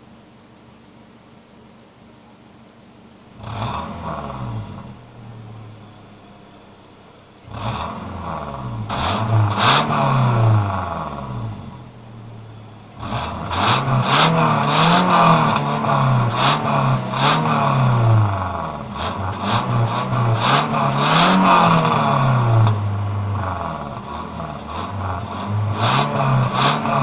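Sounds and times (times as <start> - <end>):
engine revving: 3.4 - 27.0
high exhaust whistle: 8.8 - 27.0.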